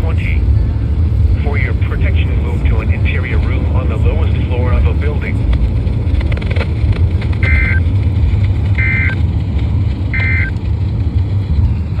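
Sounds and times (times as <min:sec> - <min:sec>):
low rumble: 0:00.0 - 0:12.0
warbling digital tone bursts: 0:07.4 - 0:07.8, 0:08.8 - 0:09.2, 0:10.2 - 0:10.5.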